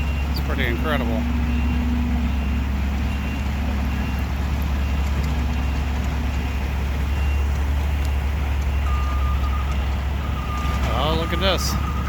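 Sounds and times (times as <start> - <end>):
backup alarm beeps: 0.0 - 12.0
diesel engines droning: 0.0 - 12.0.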